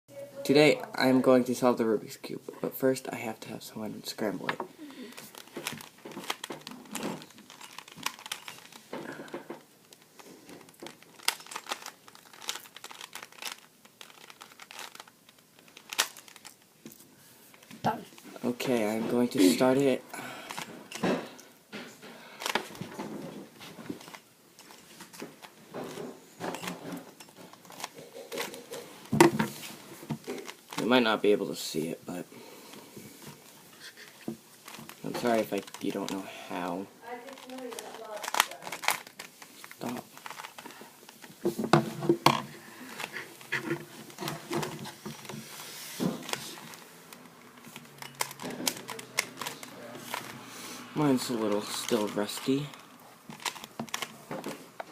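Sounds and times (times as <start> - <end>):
rubik's cube clicking: 7.4 - 8.8, 10.9 - 16.6, 37.3 - 39.4, 47.6 - 50.3, 53.3 - 54.1.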